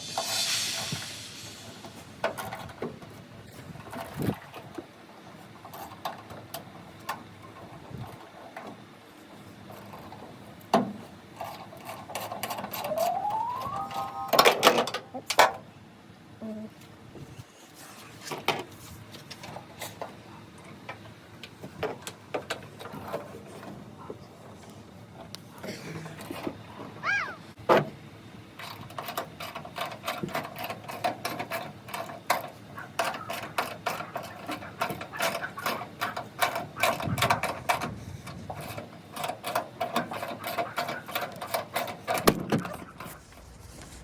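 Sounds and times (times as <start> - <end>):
clicks and knocks of parts handled: 28.6 - 43.2.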